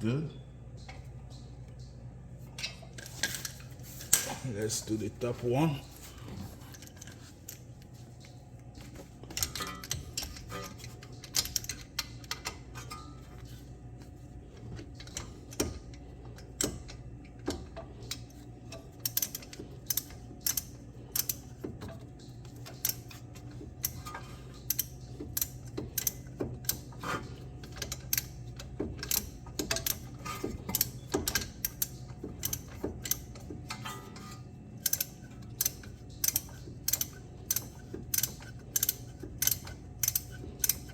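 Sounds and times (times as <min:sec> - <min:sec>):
ratchet wrench clicking: 0:18.1 - 0:22.0, 0:22.6 - 0:33.8, 0:34.8 - 0:40.9.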